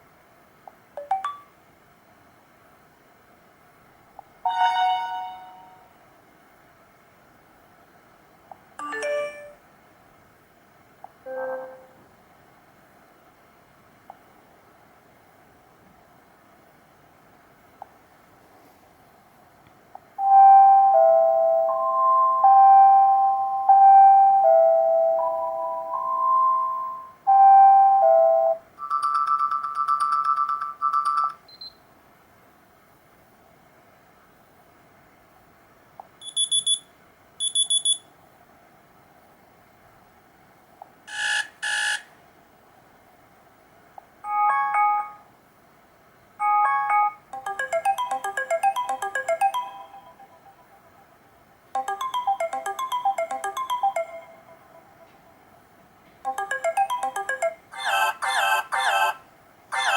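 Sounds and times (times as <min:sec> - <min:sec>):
two-note phone chime: 0:04.5 - 0:05.9, 0:08.8 - 0:09.6, 0:20.2 - 0:29.3, 0:44.3 - 0:45.3, 0:46.4 - 0:50.5, 0:51.8 - 0:55.1, 0:56.3 - 0:57.7
rapid bright phone beeps: 0:28.8 - 0:31.8, 0:36.2 - 0:36.8, 0:37.4 - 0:38.0, 0:41.1 - 0:42.0, 0:46.4 - 0:50.6, 0:51.8 - 0:55.0, 0:56.3 - 0:59.2.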